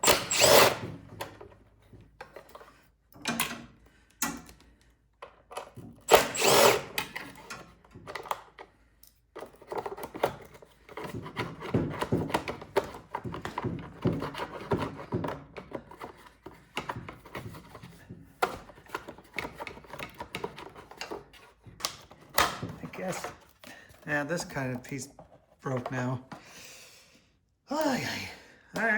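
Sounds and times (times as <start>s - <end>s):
power driver on bolts: 0.0s - 1.6s, 5.6s - 8.6s
clicking scraping and knocking parts: 0.0s - 26.4s.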